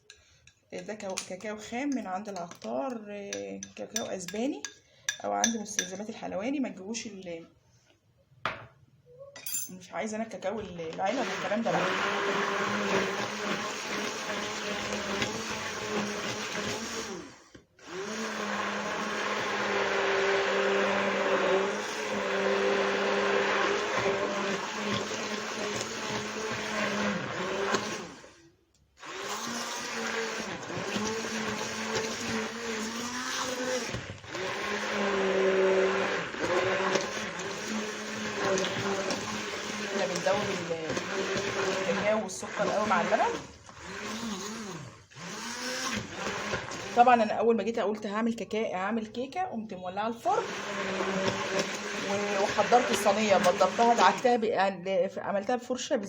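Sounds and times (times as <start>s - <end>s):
hand blender motor hum: 11.0s - 28.4s, 29.0s - 47.2s, 50.3s - 54.3s.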